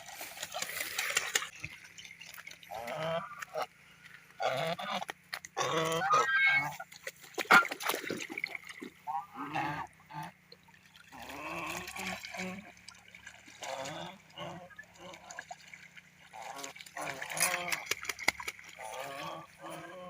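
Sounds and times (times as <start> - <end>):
water splashing and trickling: 0.0 - 20.0
geese honking: 2.7 - 3.8, 4.4 - 6.8, 13.6 - 15.3, 18.8 - 20.0.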